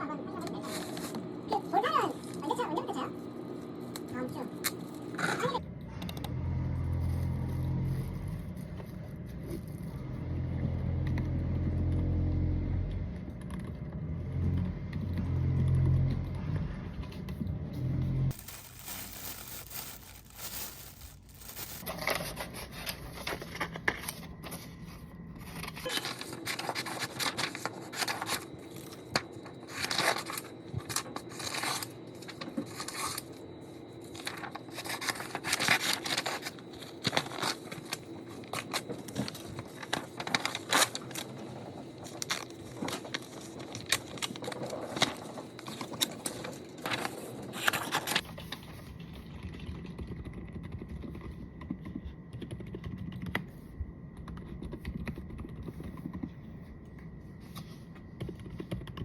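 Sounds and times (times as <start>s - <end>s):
faint steady hum: 0.0s - 59.0s
small objects clicking and rustling: 18.3s - 24.2s.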